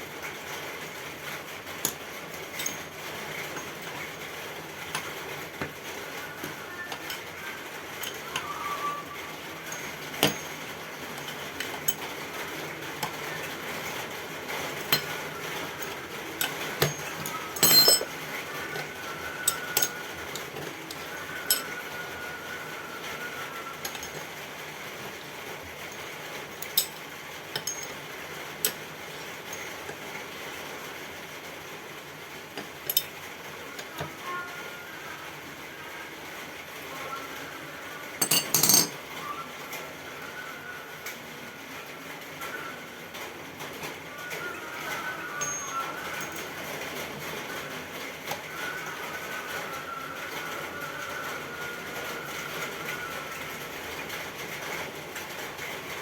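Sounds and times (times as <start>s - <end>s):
metal tools clinking: 2.5s - 4.0s, 9.7s - 10.6s, 14.8s - 15.2s, 15.8s - 18.2s, 19.4s - 20.0s, 21.5s - 21.7s, 23.8s - 24.2s, 25.9s - 28.0s, 32.9s - 33.1s, 38.2s - 39.0s, 45.4s - 46.5s
ringing metal clank: 16.8s - 18.1s, 38.2s - 38.9s.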